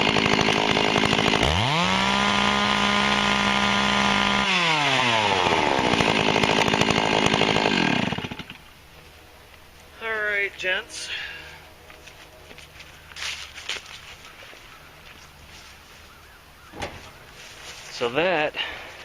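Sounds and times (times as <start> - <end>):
chainsaw revving: 0.0 - 8.6.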